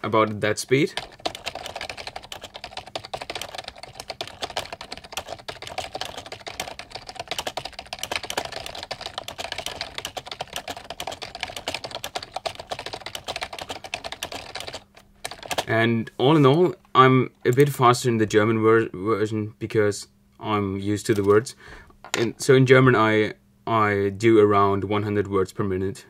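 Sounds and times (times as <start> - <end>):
fast keyboard typing: 0.0 - 15.8, 21.1 - 21.4.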